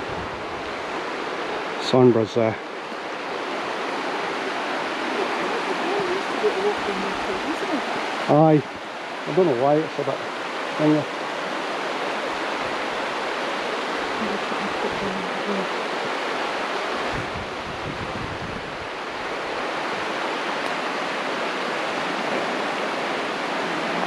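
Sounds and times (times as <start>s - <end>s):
river rushing: 0.0s - 24.0s.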